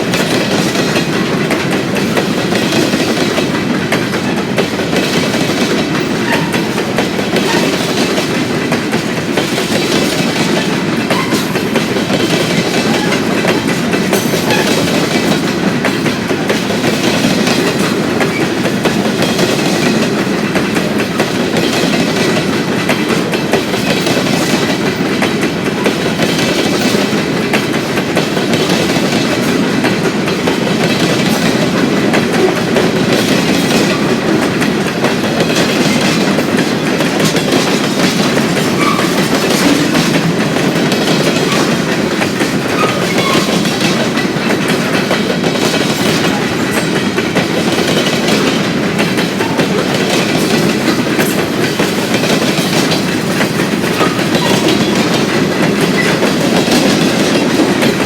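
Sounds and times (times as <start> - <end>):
freight train rumbling past: 0.0 - 58.0
wheels clicking over rail joints: 0.0 - 58.0.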